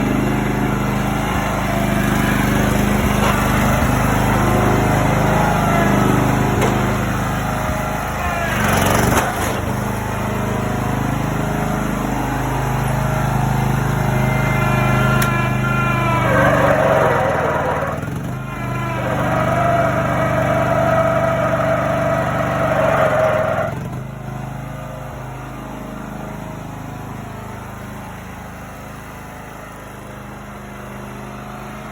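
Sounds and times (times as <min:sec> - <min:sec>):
lawn mower engine revving: 0:00.0 - 0:31.9.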